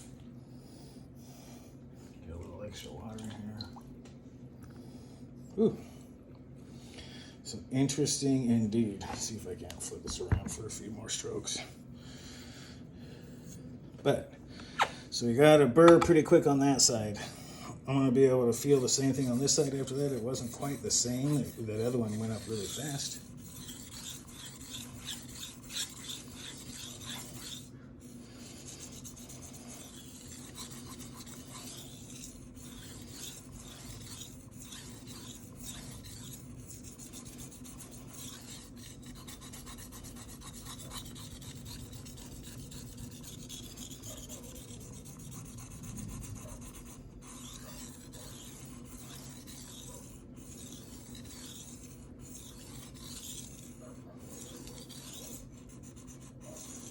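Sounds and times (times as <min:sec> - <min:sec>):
knife scraping on whetstone: 0:18.4 - 0:56.9.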